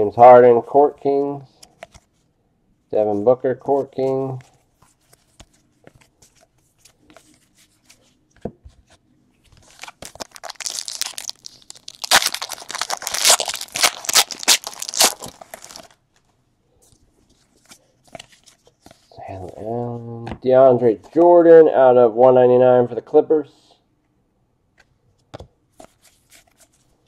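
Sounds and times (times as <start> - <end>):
foil wrapper tearing and crinkling: 9.7 - 16.0.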